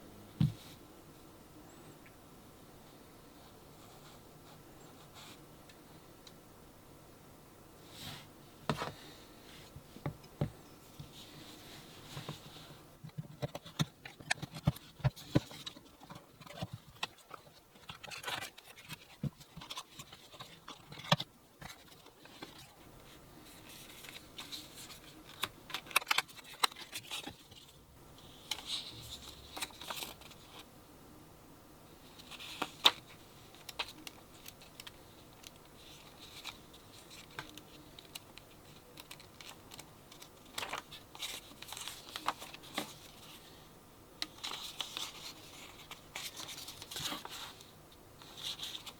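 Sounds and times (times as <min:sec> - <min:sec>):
cardboard and plastic rustling: 0:10.0 - 0:27.8, 0:28.4 - 0:30.6, 0:32.1 - 0:43.6, 0:44.2 - 0:48.9.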